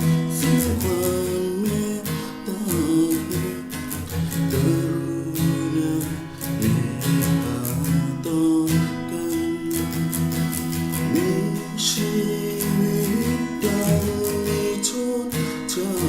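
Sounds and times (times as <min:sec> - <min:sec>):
strummed acoustic guitar: 0:00.0 - 0:16.0.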